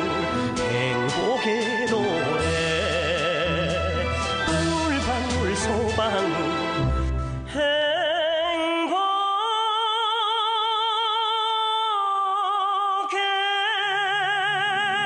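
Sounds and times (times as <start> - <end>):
light musical accompaniment: 0.0 - 8.2.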